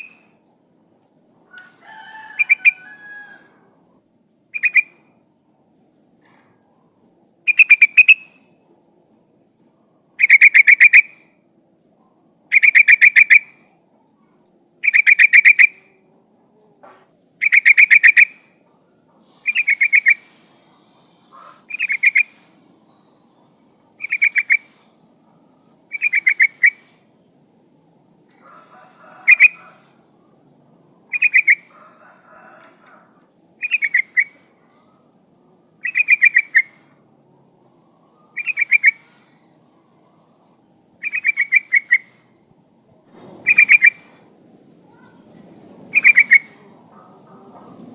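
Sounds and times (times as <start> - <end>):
bird chattering call: 1.4 - 3.4, 4.5 - 5.1, 7.5 - 8.7, 10.2 - 11.2, 12.5 - 13.6, 14.8 - 15.9, 17.4 - 18.4, 19.3 - 20.4, 21.2 - 23.3, 23.9 - 24.8, 25.9 - 27.0, 28.3 - 30.0, 31.0 - 31.8, 32.4 - 36.9, 37.8 - 40.4, 41.0 - 42.6, 43.3 - 44.2, 45.9 - 47.9.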